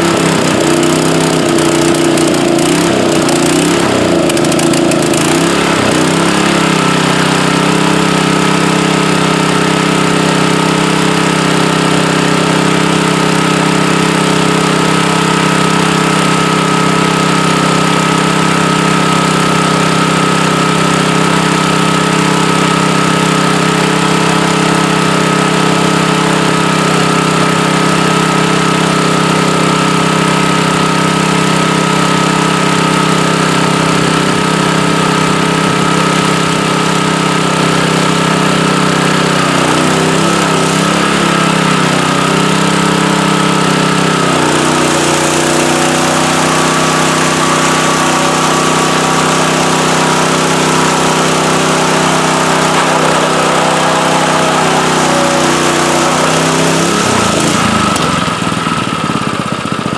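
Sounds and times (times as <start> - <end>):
water pump hissing rush: 0.0 - 59.4
engine running steadily: 0.0 - 59.9.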